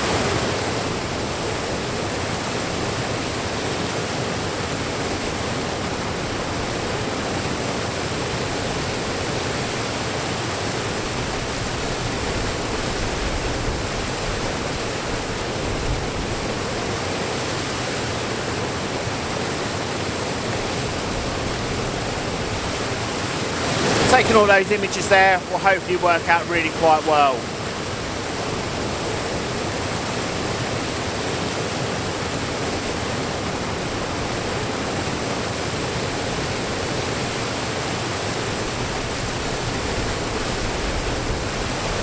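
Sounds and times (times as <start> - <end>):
waterfall rushing: 23.6 - 27.4.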